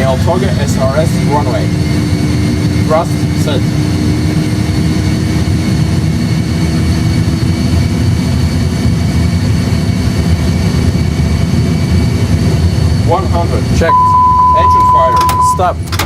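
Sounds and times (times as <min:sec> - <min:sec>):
jet engine low rumble: 0:00.0 - 0:16.0
faint high whine: 0:13.8 - 0:15.8.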